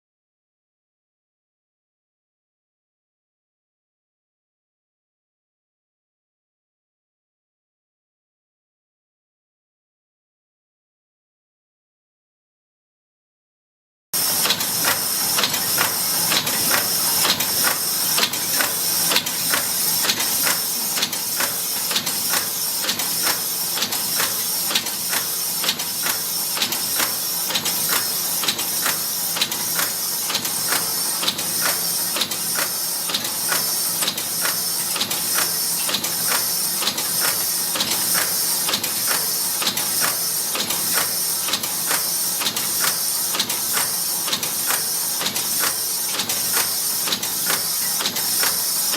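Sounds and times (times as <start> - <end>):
machine hiss: 14.2 - 34.6.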